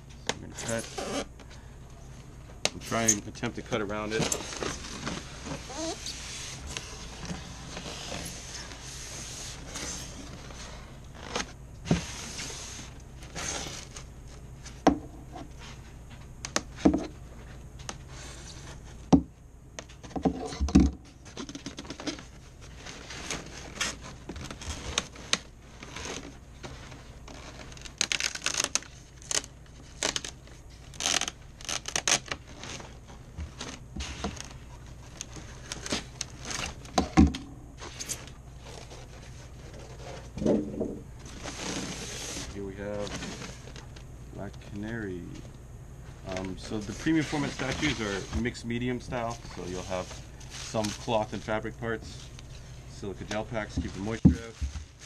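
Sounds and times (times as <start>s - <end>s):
styrofoam scraping and tearing: 0.6s - 1.3s, 4.0s - 14.1s, 21.3s - 37.0s, 41.2s - 43.8s, 46.3s - 52.4s.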